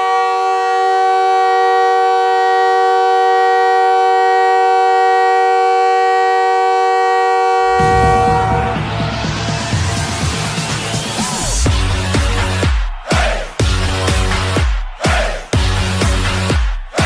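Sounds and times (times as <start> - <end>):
goal horn chord: 0.0 - 10.4
noisy burst: 7.6 - 11.8
goal music: 7.6 - 17.0.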